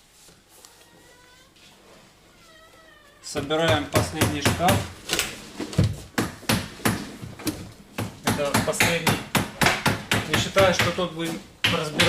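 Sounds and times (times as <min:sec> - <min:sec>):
cat meowing: 0:02.2 - 0:03.5.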